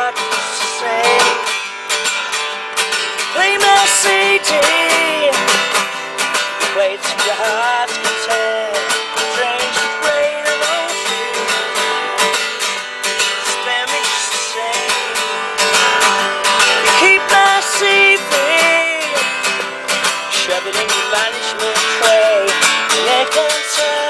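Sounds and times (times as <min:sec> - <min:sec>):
man singing: 0:00.0 - 0:01.7, 0:03.1 - 0:24.0
acoustic guitar strumming: 0:00.0 - 0:24.0.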